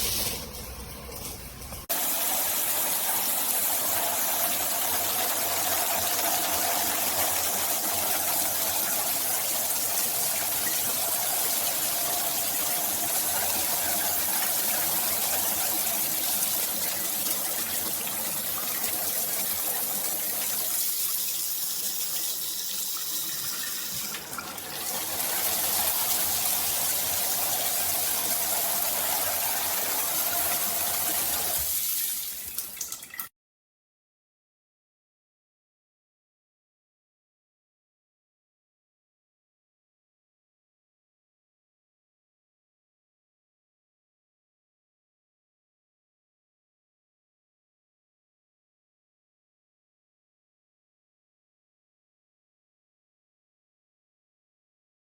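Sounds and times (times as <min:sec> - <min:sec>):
shower water rushing: 0:00.0 - 0:33.3.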